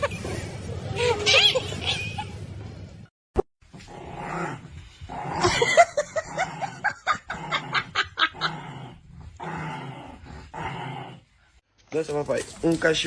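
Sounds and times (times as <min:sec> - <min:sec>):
dog yipping and whining: 0:00.9 - 0:02.4.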